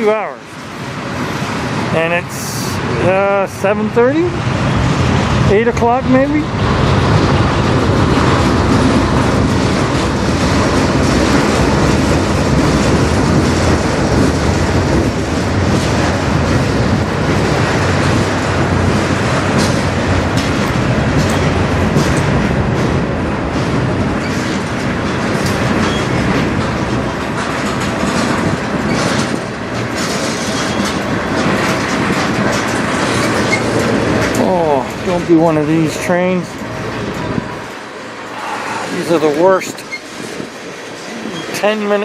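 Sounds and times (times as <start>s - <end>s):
train wheels rumbling on rail: 0.0s - 42.0s
clicks over rail joints: 7.3s - 35.5s.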